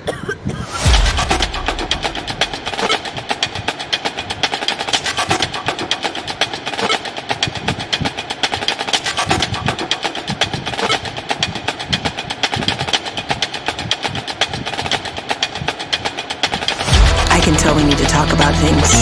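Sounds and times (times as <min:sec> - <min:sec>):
low drum thumps: 0:00.6 - 0:03.5, 0:16.6 - 0:18.8
music with fast percussion beat: 0:00.7 - 0:19.0.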